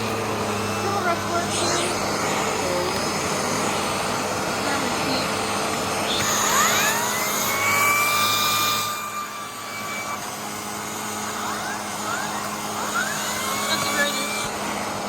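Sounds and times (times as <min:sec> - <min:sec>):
upright vacuum cleaner running: 0:00.0 - 0:15.0
short rising whistles: 0:06.0 - 0:14.8.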